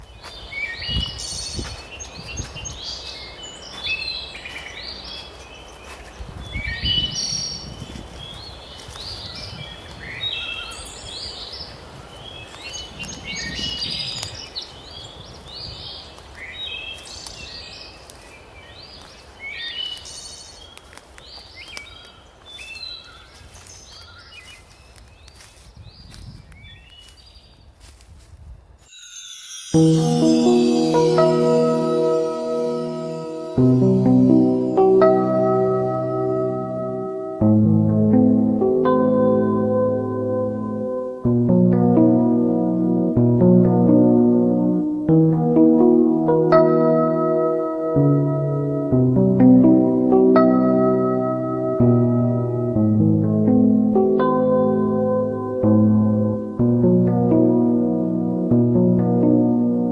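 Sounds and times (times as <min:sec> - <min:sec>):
songbirds singing and chirping: 0:00.0 - 0:43.2.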